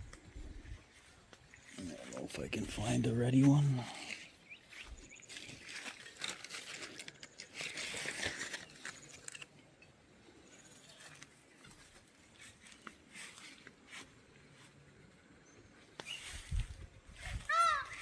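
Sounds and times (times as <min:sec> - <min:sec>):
leaves and twigs rustling: 0:00.0 - 0:09.8, 0:10.4 - 0:14.9, 0:15.8 - 0:18.0.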